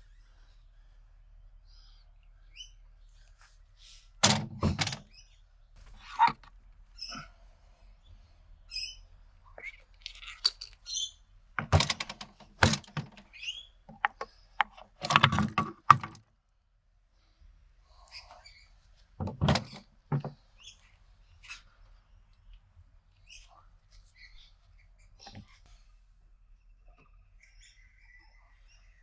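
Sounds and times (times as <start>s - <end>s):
metal parts knocking and clattering: 10.0s - 10.8s, 11.6s - 13.3s, 13.9s - 16.2s.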